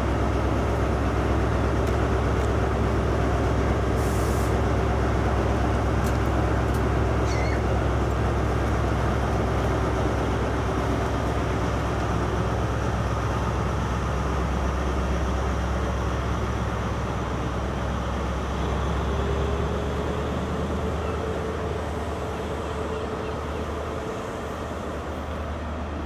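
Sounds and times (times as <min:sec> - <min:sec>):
diesel train engine rumbling: 0:00.0 - 0:26.0.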